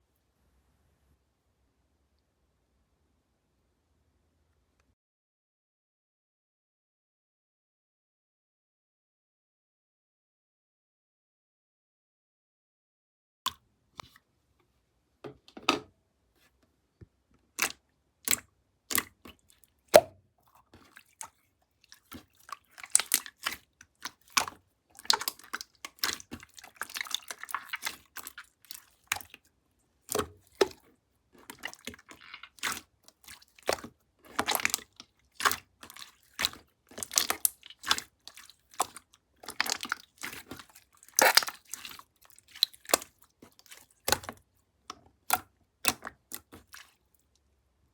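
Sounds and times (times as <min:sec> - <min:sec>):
crinkling and rustling: 0:30.2 - 0:45.0.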